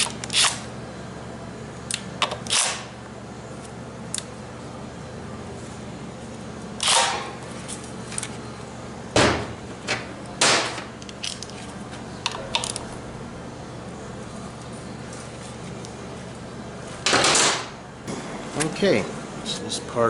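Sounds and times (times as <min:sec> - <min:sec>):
metal parts clicking: 0:12.2 - 0:12.9.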